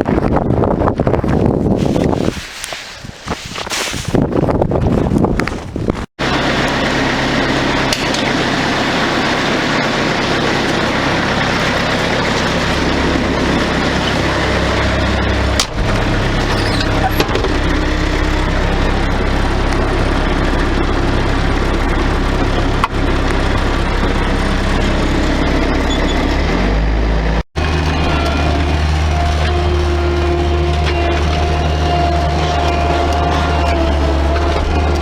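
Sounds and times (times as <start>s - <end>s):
engine running: 6.2s - 35.0s
rushing noise: 6.2s - 35.0s.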